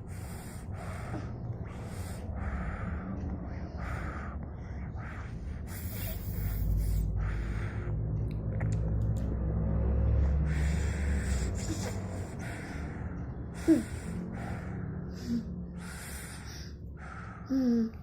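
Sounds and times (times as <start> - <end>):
low rumble: 0.0 - 18.0
child fake-snoring: 5.6 - 7.4, 10.5 - 12.8, 13.6 - 16.7, 17.5 - 18.0.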